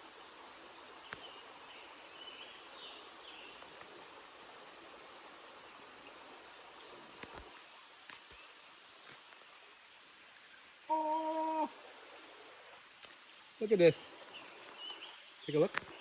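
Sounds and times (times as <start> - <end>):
creek water flowing: 0.0 - 16.0.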